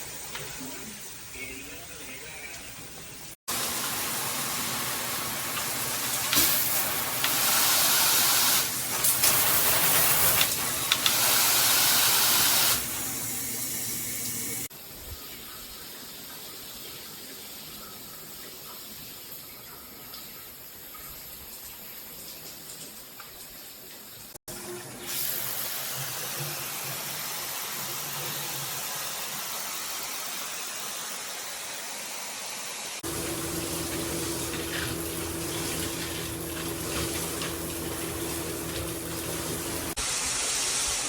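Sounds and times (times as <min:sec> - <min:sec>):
water spraying from shower head: 0:03.5 - 0:14.7, 0:25.0 - 0:31.1, 0:33.0 - 0:41.0.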